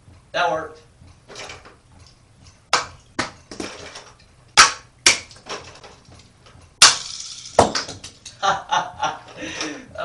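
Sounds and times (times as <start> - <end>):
toy cars cracking against hard surfaces: 6.8 - 8.4.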